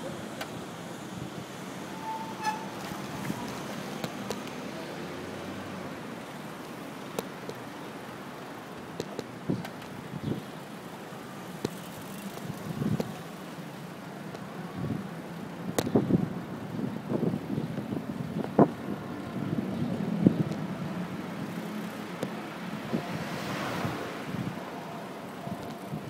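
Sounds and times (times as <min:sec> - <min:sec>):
rush of air and road: 0:00.0 - 0:26.0
sharp clicks and knocks: 0:02.8 - 0:04.6.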